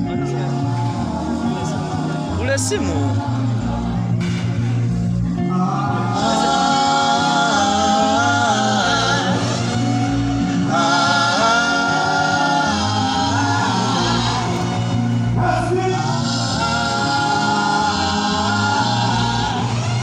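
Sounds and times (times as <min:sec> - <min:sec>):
band music: 0:00.0 - 0:20.0
steady bass notes: 0:00.0 - 0:20.0
person singing: 0:05.4 - 0:20.0.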